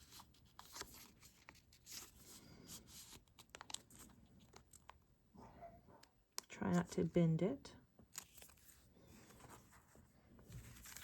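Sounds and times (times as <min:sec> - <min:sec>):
plastic sleeve rustling: 0:00.0 - 0:04.9, 0:08.2 - 0:11.0.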